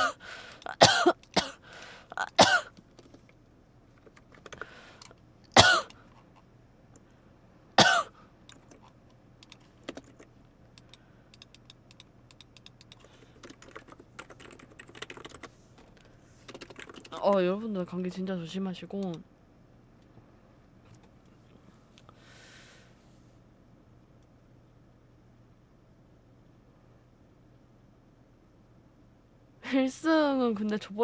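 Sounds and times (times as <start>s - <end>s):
person coughing: 0.0s - 2.7s, 5.6s - 5.9s, 7.8s - 8.1s
computer keyboard typing: 0.4s - 3.4s, 4.0s - 5.2s, 8.5s - 17.5s.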